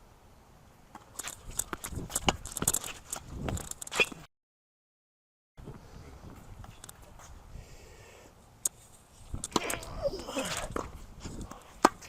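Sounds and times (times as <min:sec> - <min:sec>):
faint outdoor background: 0:00.0 - 0:04.3, 0:05.6 - 0:12.0
tennis ball knocks and clicks: 0:10.5 - 0:12.0.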